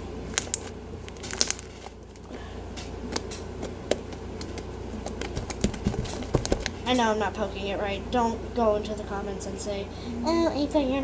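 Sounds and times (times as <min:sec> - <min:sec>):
slime squishing and popping: 0:00.3 - 0:02.3.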